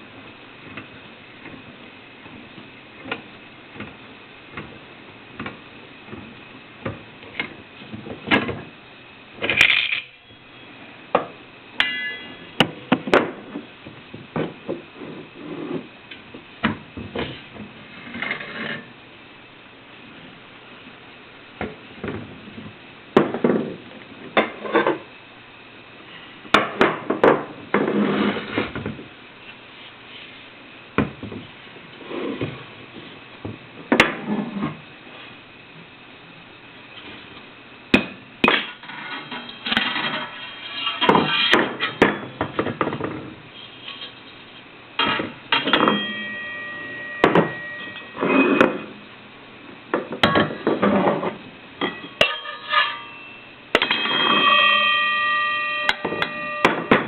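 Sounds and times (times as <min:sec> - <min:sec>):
ringing metal ping: 0:11.8 - 0:12.6, 0:45.0 - 0:48.9, 0:51.8 - 0:57.0.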